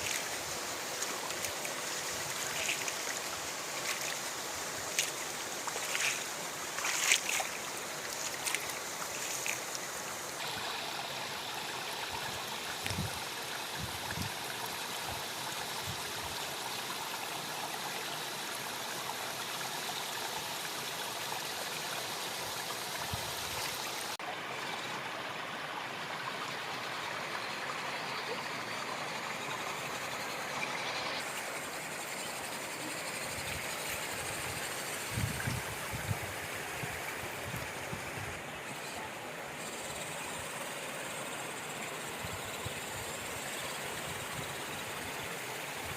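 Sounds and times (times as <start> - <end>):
stream rushing: 0.0 - 17.6.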